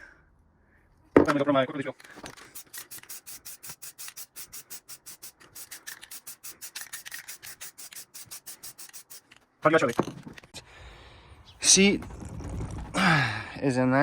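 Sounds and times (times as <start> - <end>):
hand sanding strokes: 2.5 - 9.4.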